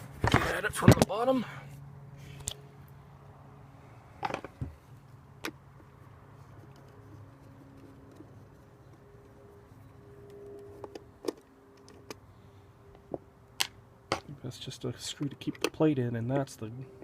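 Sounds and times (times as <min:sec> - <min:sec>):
faint steady hum: 0:00.0 - 0:17.0
tools clicking and knocking: 0:15.2 - 0:15.8.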